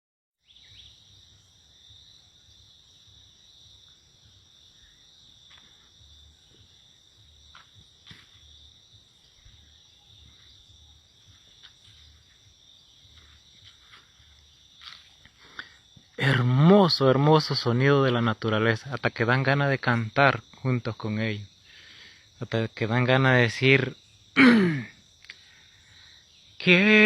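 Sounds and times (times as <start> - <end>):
crickets and insects trilling: 0.4 - 27.0.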